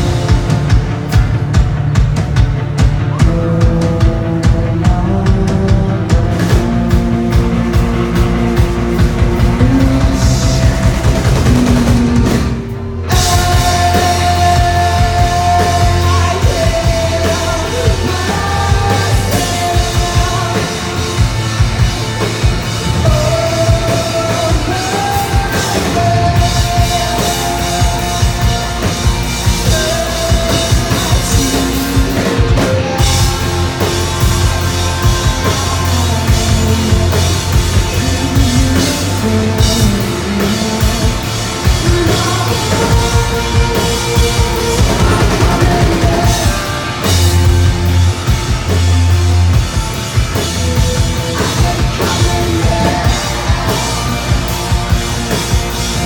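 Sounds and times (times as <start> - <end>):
distorted electric guitars: 0.0 - 56.0
driving drum kit: 0.0 - 56.0
live rock band playing: 0.0 - 56.0.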